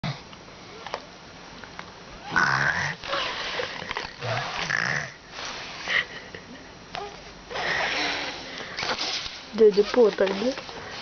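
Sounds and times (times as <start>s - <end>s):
child imitating snoring: 2.2s - 3.4s, 4.1s - 5.2s, 7.6s - 8.4s.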